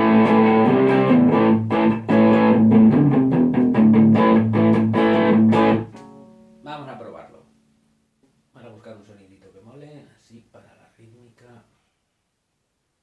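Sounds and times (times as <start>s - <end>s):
electric guitar strumming chords: 0.0s - 6.6s.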